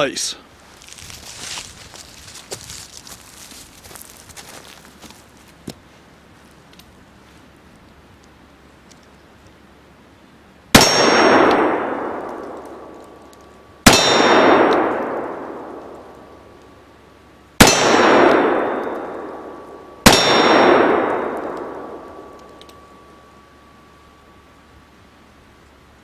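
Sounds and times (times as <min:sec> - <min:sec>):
steel target ringing: 0:10.8 - 0:16.2, 0:17.6 - 0:24.3.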